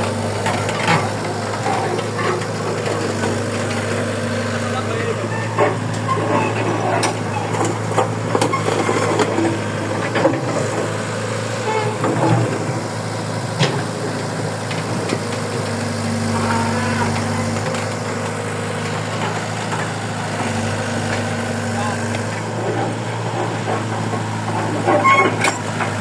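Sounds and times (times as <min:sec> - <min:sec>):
heavy machine engine running: 0:00.0 - 0:26.0
knocks and clanks: 0:05.2 - 0:10.9, 0:11.7 - 0:12.8, 0:13.4 - 0:26.0.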